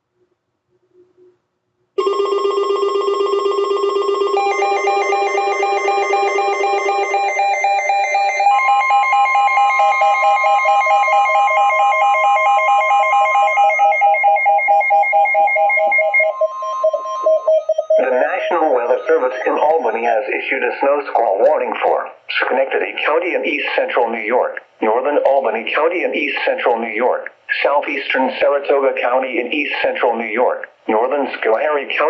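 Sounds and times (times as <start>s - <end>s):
steady high tone: 4.2s - 22.0s
shrill pulsing electronic tones: 4.4s - 20.2s.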